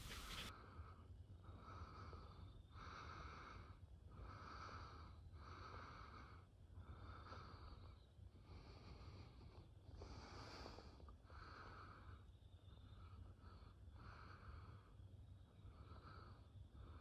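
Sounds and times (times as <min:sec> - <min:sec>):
squirrel barking: 0:00.0 - 0:00.5.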